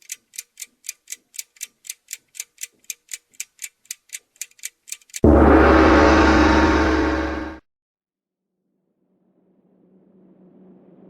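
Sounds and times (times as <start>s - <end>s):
clock ticking: 0.0s - 5.3s
loud sustained ringing: 5.2s - 7.6s.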